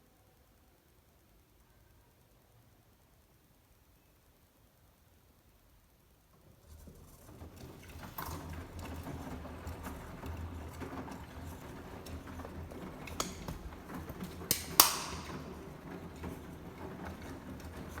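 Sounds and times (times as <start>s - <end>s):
washing machine humming: 6.5s - 18.0s
clicks: 13.0s - 16.4s.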